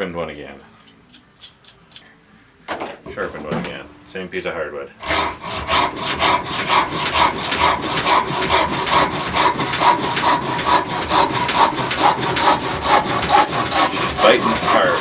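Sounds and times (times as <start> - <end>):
pull saw cutting wood: 5.0 - 15.0.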